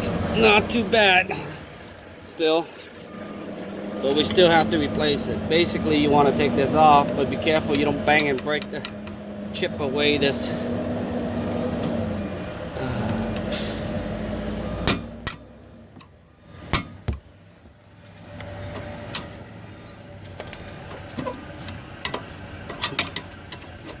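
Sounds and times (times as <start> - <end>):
metallic clicks and knocks: 20.3 - 24.0.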